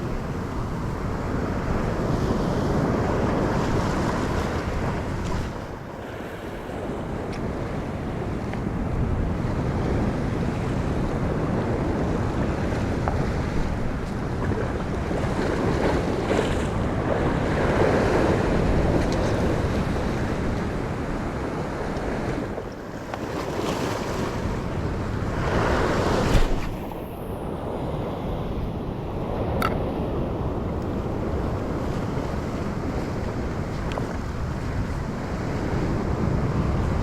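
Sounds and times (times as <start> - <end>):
ocean swell washing over rocks: 0.0 - 37.0
wind buffeting microphone: 0.0 - 37.0.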